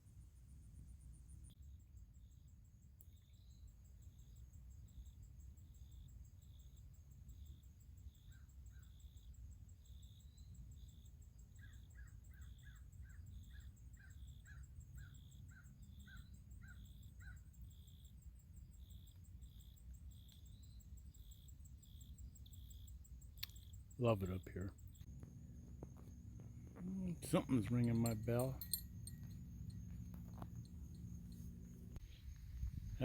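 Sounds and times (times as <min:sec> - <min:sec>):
faint birds calling: 0:11.6 - 0:18.0
low background rumble: 0:24.7 - 0:33.0.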